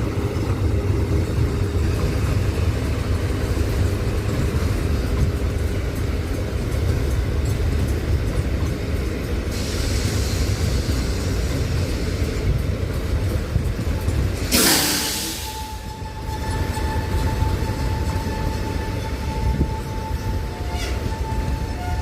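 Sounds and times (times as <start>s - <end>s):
freight train rumbling: 0.0s - 22.0s
hiss: 9.3s - 13.0s, 14.4s - 16.0s.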